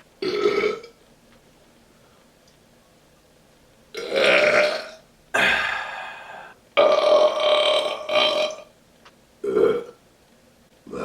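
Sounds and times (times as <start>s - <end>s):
man burping: 0.2s - 0.9s, 4.0s - 8.6s, 9.4s - 9.9s.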